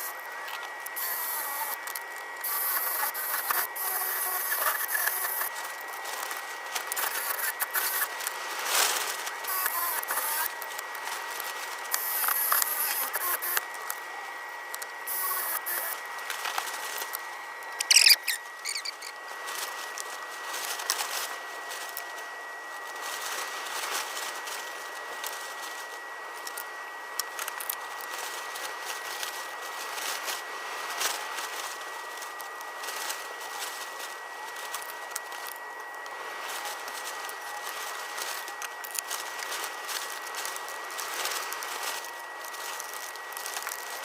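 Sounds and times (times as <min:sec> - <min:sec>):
sharp squeak: 0:17.8 - 0:19.1.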